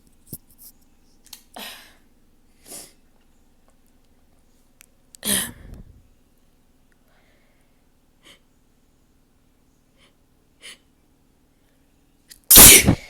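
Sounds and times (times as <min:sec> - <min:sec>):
person sniffing: 0:12.5 - 0:13.0.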